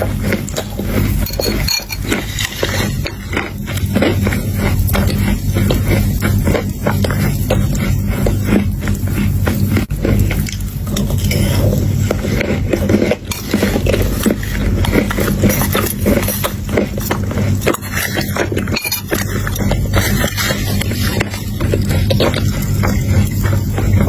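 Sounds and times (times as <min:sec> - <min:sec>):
crunchy chewing: 0:00.0 - 0:24.0
spoon clinking against bowl: 0:01.2 - 0:02.2.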